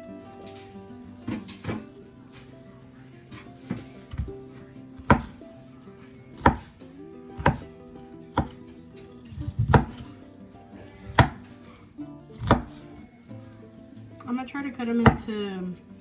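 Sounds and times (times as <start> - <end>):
knife chopping on cutting board: 3.3 - 4.4, 5.0 - 5.4, 6.4 - 6.8, 7.4 - 8.7, 9.3 - 10.1, 11.0 - 11.6, 12.4 - 12.9, 15.0 - 15.3.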